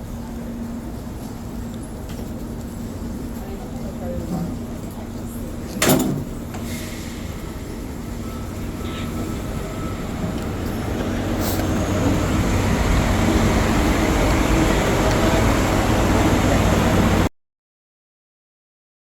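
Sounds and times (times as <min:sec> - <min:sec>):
moving vehicle rumble: 0:00.0 - 0:17.3.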